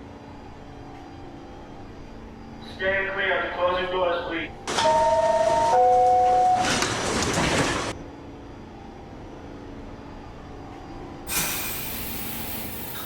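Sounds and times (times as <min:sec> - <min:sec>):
air brakes hissing: 0:11.3 - 0:13.0.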